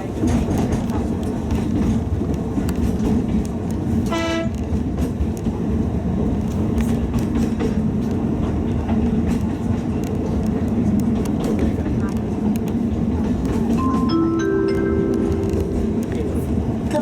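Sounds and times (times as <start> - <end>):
train rumbling along track: 0.0 - 17.0
wheels clicking over rail joints: 0.1 - 14.1
train horn toot: 4.0 - 4.6.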